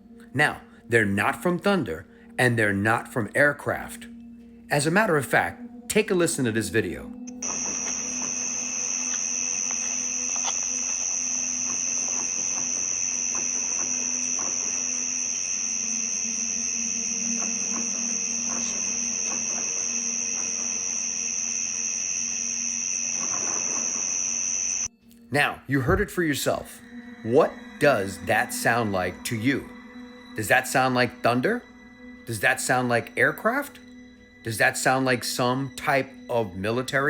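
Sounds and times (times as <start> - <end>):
low steady hum: 6.7 - 25.3
insects chirping: 7.2 - 25.0, 26.4 - 37.0.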